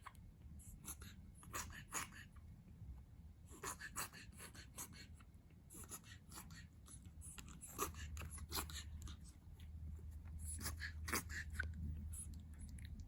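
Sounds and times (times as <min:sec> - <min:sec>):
puppy clicks and smacks: 0:06.8 - 0:13.0.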